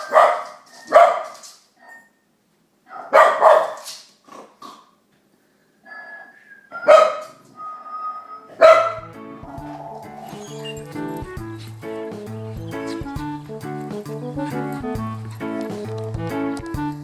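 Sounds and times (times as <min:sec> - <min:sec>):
dog barking: 0:00.0 - 0:02.0, 0:02.9 - 0:03.9, 0:05.9 - 0:07.4, 0:08.5 - 0:11.2
music: 0:08.2 - 0:17.0.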